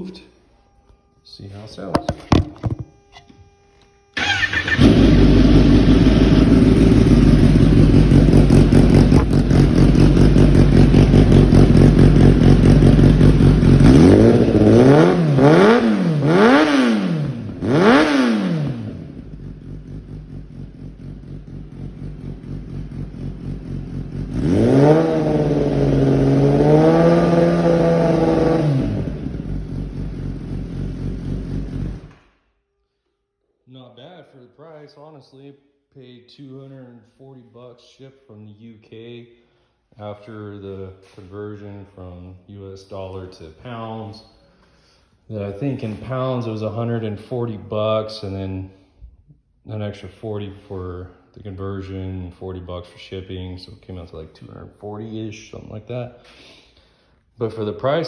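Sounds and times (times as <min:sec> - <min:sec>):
motorcycle engine revving and idling: 0:04.2 - 0:32.2.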